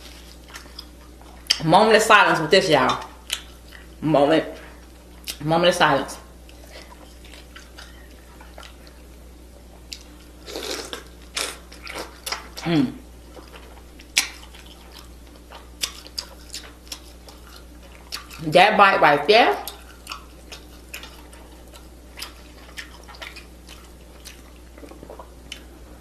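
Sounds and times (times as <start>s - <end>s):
person chewing and crunching: 0.0s - 1.6s, 3.0s - 4.0s, 6.4s - 9.1s, 9.8s - 18.5s, 19.6s - 25.8s.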